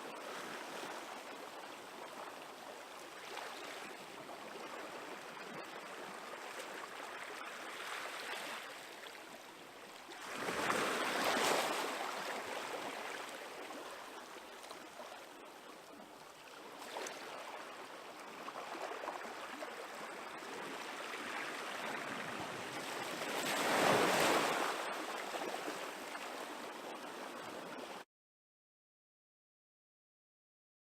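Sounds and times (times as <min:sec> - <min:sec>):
waves breaking on beach: 0:00.0 - 0:28.0.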